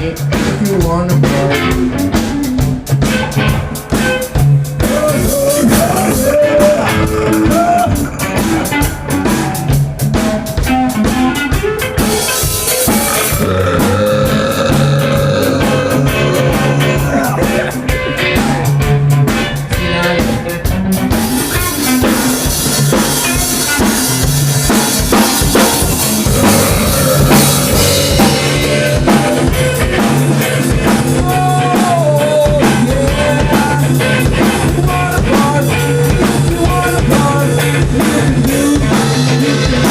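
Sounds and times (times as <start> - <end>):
drum kit steady beat: 0.0 - 39.9
guitar: 0.0 - 39.9
bass line: 4.6 - 10.1, 12.6 - 19.4, 22.6 - 32.0.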